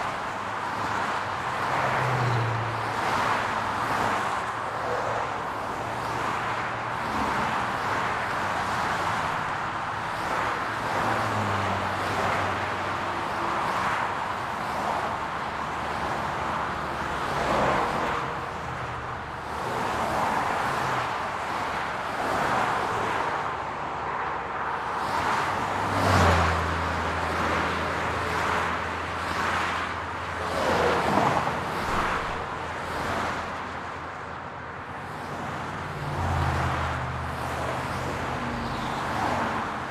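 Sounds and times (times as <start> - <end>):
cars passing: 0.0 - 39.9
heavy vehicle engine hum: 23.2 - 39.9.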